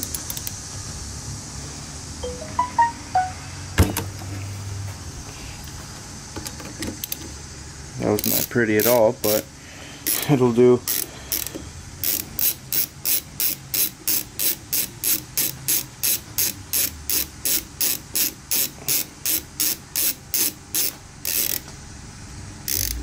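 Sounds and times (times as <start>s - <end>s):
ratchet wrench clicking: 0.0s - 0.6s, 7.0s - 7.2s, 8.2s - 9.4s, 10.0s - 10.2s, 10.9s - 21.7s, 22.6s - 23.0s.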